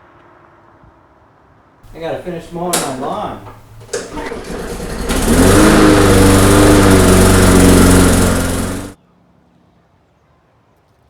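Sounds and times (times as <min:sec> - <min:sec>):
lawn mower running: 0:01.9 - 0:09.0.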